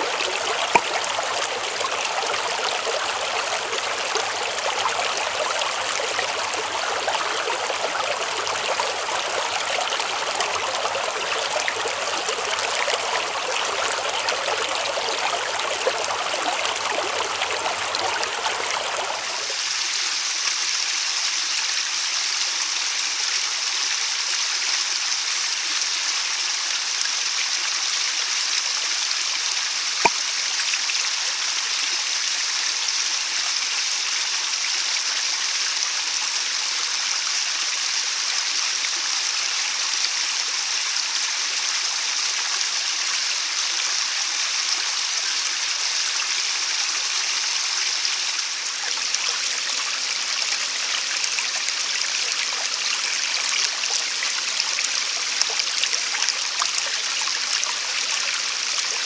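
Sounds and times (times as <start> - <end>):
stream water rushing: 0.0 - 7.4, 29.9 - 31.2, 44.4 - 59.0.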